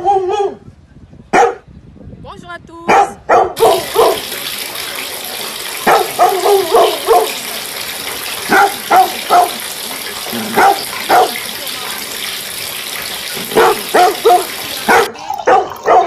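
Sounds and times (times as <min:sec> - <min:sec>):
dog barking: 0:00.0 - 0:00.6, 0:01.3 - 0:01.6, 0:02.9 - 0:04.3, 0:05.8 - 0:07.4, 0:08.5 - 0:09.6, 0:10.4 - 0:11.5, 0:13.5 - 0:16.0
running water: 0:03.6 - 0:16.0.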